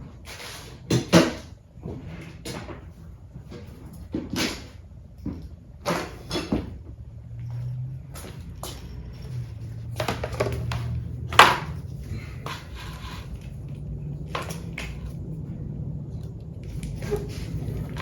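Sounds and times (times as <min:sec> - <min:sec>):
low steady hum: 0:00.0 - 0:18.0
tools clicking and knocking: 0:07.7 - 0:15.2.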